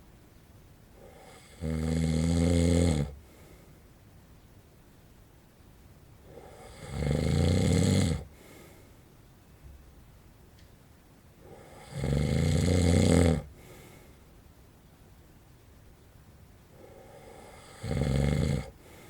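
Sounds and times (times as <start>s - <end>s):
man snoring: 1.0s - 3.2s, 6.3s - 8.3s, 11.4s - 13.5s, 16.8s - 18.8s.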